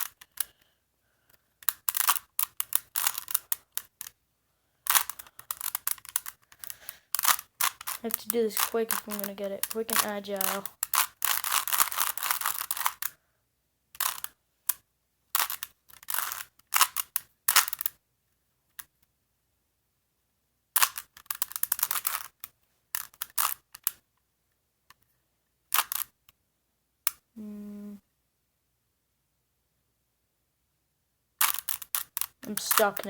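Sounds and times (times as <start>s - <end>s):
puzzle cube clicking: 0.0s - 0.7s, 1.3s - 4.2s, 4.8s - 13.2s, 14.0s - 18.0s, 20.7s - 24.0s, 25.7s - 26.4s, 31.4s - 33.0s.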